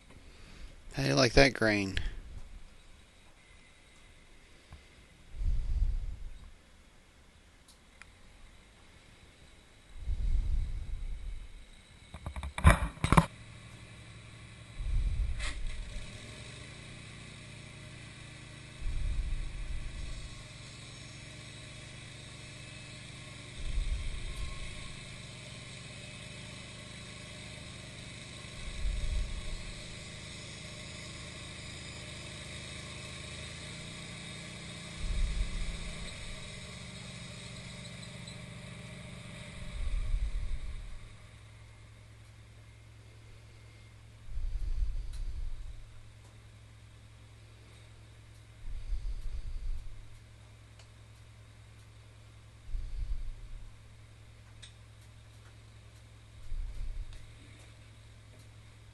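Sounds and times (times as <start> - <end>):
bandsaw mill sawing wood: 13.1 - 41.6.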